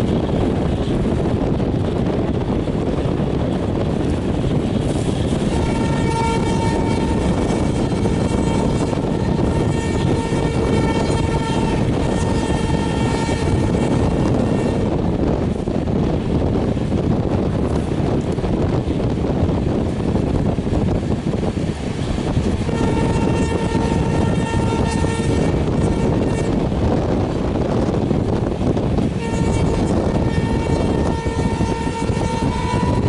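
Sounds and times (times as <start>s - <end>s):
train running rumble: 0.0s - 33.0s
wind: 0.0s - 33.0s
locomotive horn blast: 5.4s - 15.0s, 22.6s - 26.9s, 29.2s - 33.0s.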